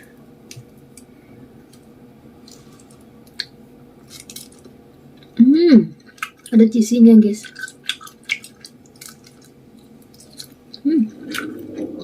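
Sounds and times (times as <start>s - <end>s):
person eating noodles: 7.6s - 12.0s.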